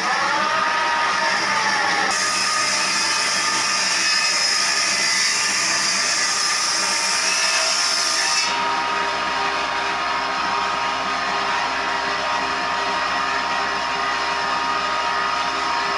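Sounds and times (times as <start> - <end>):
power tool motor whine: 0.0 - 7.8.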